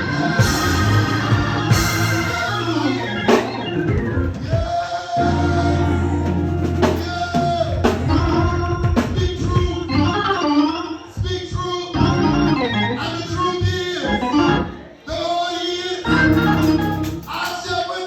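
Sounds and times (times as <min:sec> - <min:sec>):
drum strokes: 0:00.0 - 0:05.0
organ playing chords: 0:00.0 - 0:11.2, 0:11.9 - 0:15.1, 0:16.0 - 0:17.8.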